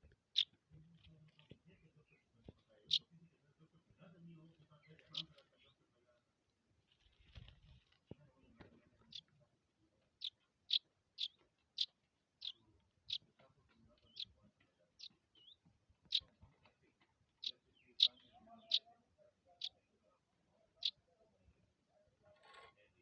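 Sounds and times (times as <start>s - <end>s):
small bird chirping: 0.0s - 3.2s, 4.8s - 5.8s, 9.0s - 16.4s, 17.2s - 19.8s, 20.5s - 21.1s.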